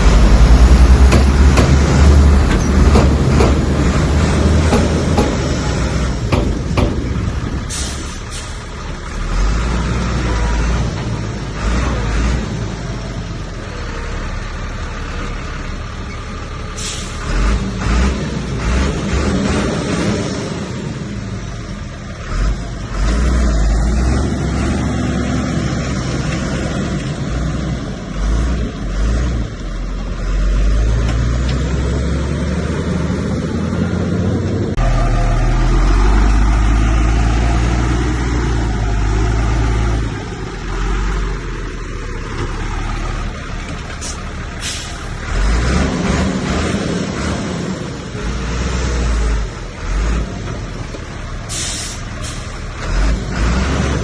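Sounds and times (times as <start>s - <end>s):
heavy diesel engines working: 0.0s - 54.0s
short hisses: 7.7s - 8.6s, 16.8s - 17.2s, 44.0s - 45.1s, 51.5s - 52.5s.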